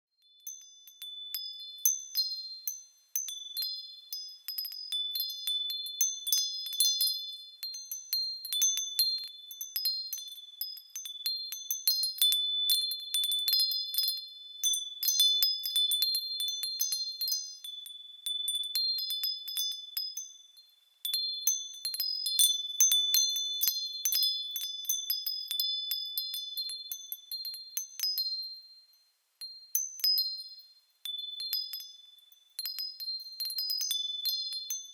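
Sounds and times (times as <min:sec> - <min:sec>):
wind chimes ringing: 0:00.2 - 0:34.9.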